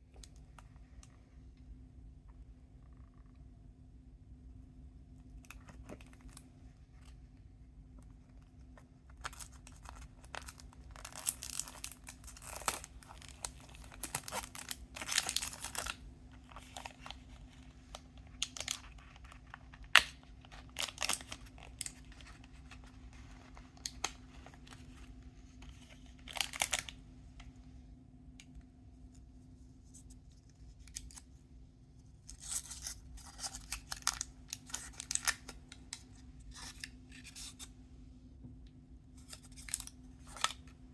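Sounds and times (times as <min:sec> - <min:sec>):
faint steady hum: 0:00.0 - 0:40.9
plastic packaging crinkling and tearing: 0:09.1 - 0:27.0, 0:32.3 - 0:37.6, 0:39.2 - 0:40.8.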